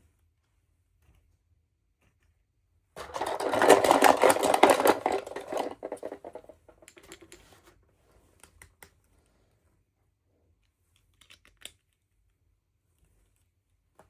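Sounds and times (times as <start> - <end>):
packaging crinkling: 3.0 - 6.5.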